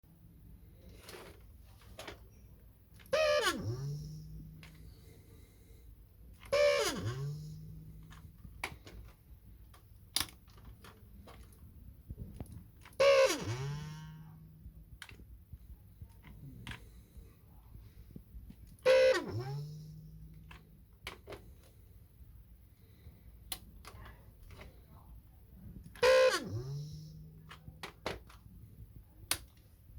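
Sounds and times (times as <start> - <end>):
vacuum motor failing to start: 3.1 - 5.1, 6.4 - 8.2, 13.0 - 14.4, 18.8 - 20.2, 26.0 - 27.5.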